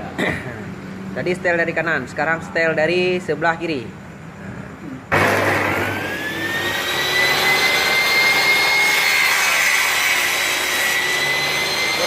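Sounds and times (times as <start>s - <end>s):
table saw whining: 5.1s - 12.0s.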